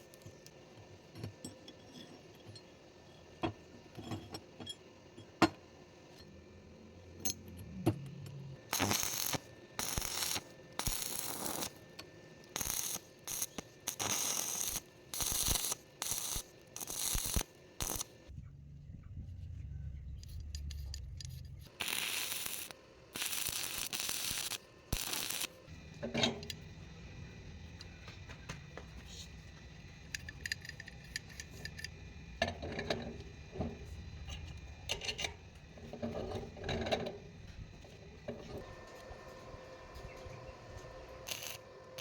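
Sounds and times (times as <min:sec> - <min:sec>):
metal ratchet clicks and clanks: 0:30.1 - 0:33.2.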